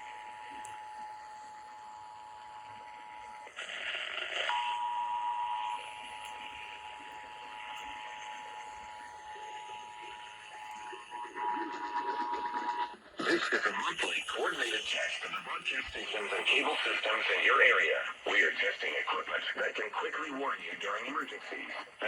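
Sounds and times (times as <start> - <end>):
radio background hiss: 1.9 - 22.0
two-tone alarm signal: 4.5 - 13.0.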